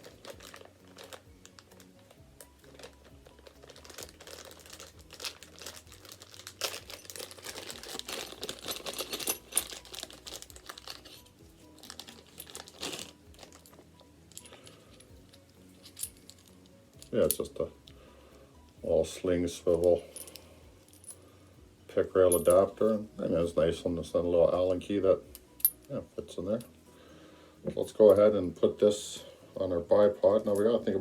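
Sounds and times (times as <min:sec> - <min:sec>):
plastic bag crinkling: 0:00.0 - 0:13.8
faint music: 0:00.0 - 0:31.0.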